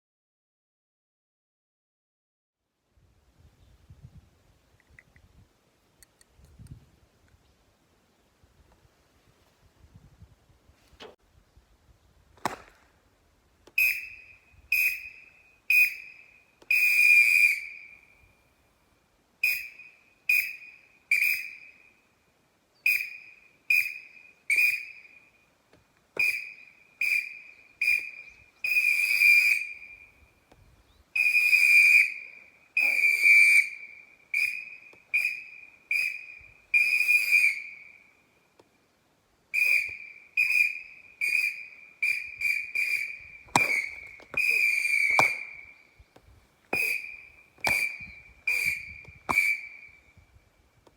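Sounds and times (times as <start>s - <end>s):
police whistle blowing: 13.7s - 18.3s, 19.4s - 22.0s, 22.8s - 25.4s, 26.2s - 30.3s, 31.2s - 38.2s, 39.5s - 46.0s, 46.7s - 50.4s.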